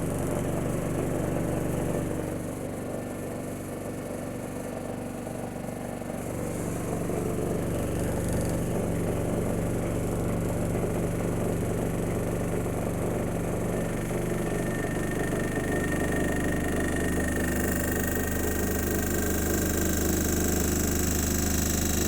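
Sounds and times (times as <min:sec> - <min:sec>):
appliance humming: 0:06.0 - 0:22.0.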